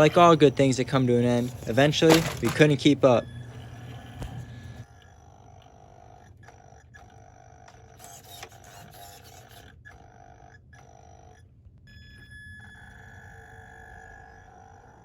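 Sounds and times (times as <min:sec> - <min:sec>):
treadmill motor humming: 0:00.0 - 0:08.6.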